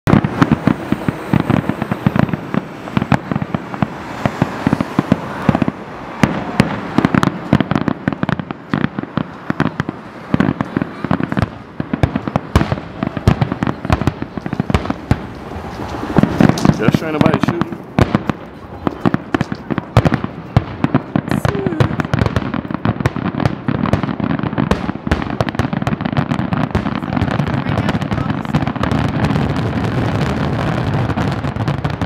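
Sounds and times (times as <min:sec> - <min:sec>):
constant rumble: 0:00.1 - 0:30.3
firework bursts and bangs: 0:00.1 - 0:32.0.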